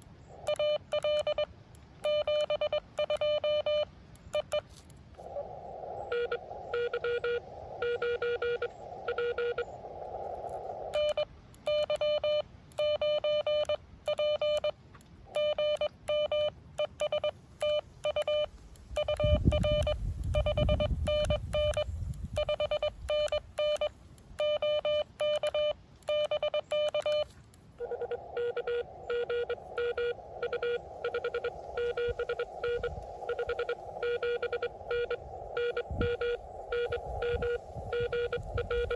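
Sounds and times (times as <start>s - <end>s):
morse code tones: 0.0s - 4.7s, 6.1s - 9.7s, 10.9s - 38.9s
receiver hiss: 0.0s - 38.9s.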